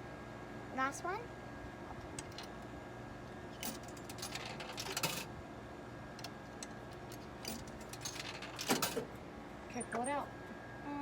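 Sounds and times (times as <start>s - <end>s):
coins dropping through vending machine: 3.6s - 5.3s, 7.4s - 9.1s.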